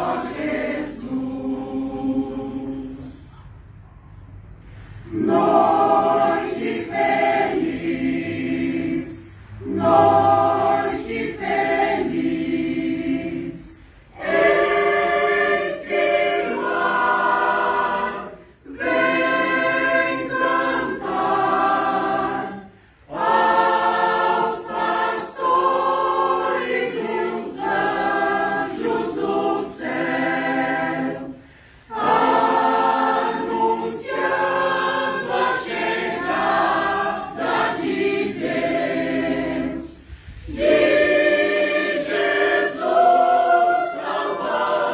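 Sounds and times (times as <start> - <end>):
choir singing unaccompanied: 0.0 - 3.3, 5.0 - 44.9.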